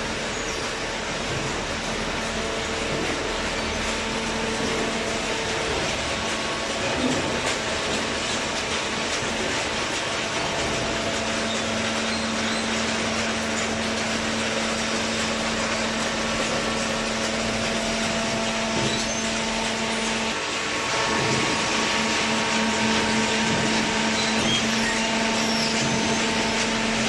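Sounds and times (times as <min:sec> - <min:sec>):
baler machine hum: 0:00.0 - 0:27.0.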